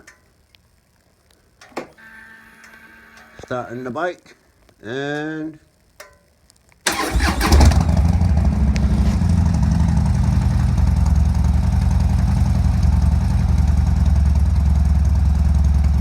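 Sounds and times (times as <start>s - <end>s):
motorcycle engine starting and idling: 6.9s - 16.0s.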